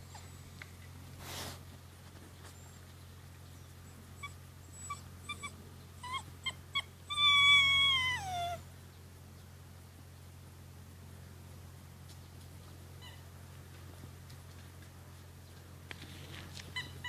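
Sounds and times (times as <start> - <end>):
puppy whining: 3.8 - 8.6, 16.6 - 17.0
puppy yipping: 4.2 - 8.6, 16.7 - 17.0.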